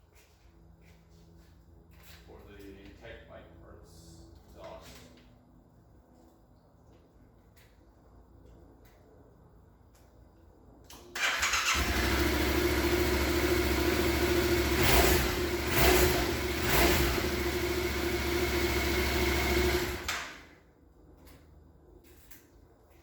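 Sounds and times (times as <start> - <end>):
motorcycle starter cranking: 11.0 - 20.5
motorcycle engine idling and revving: 11.2 - 20.4.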